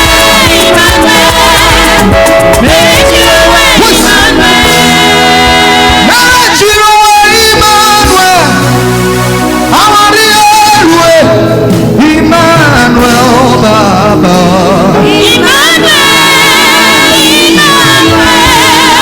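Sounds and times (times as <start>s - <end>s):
person singing praise song: 0.0s - 8.7s, 9.7s - 19.0s
band accompaniment: 0.0s - 19.0s.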